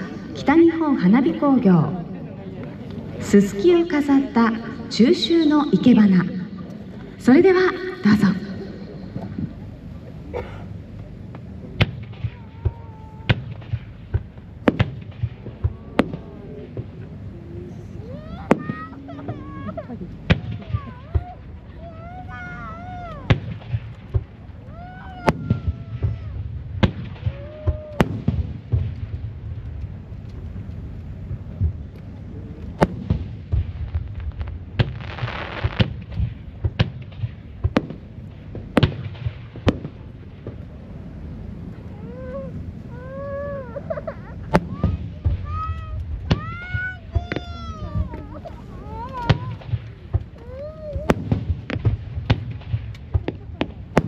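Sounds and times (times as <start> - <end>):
steady low rumble: 0.0 - 54.0.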